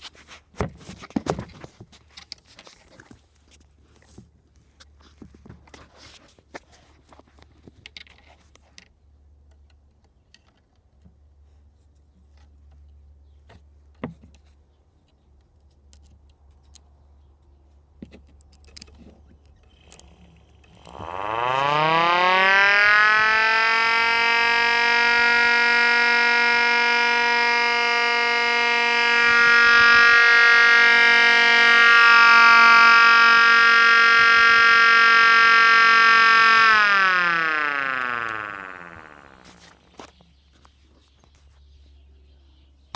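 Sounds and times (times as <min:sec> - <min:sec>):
low hum: 0:20.7 - 0:39.8
siren wailing: 0:20.8 - 0:39.7.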